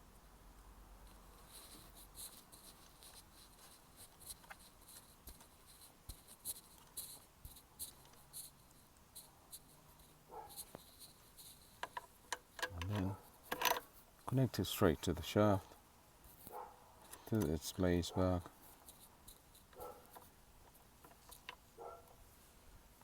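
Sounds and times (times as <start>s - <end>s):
small metal parts clicking: 11.7s - 14.0s.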